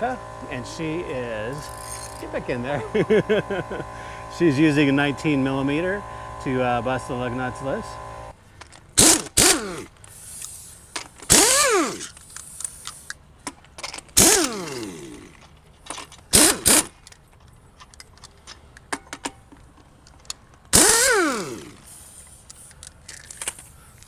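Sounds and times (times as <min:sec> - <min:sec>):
impact wrench bursts: 0:00.0 - 0:13.2, 0:13.8 - 0:17.2, 0:20.0 - 0:24.0
clicks and rattles: 0:12.0 - 0:24.0.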